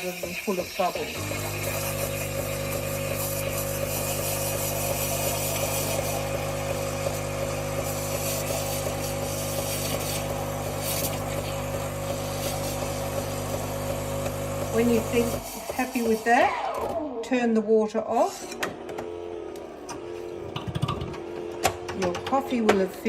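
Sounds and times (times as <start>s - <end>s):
steam wand hissing: 0.0s - 16.5s
pump hum: 1.1s - 17.2s.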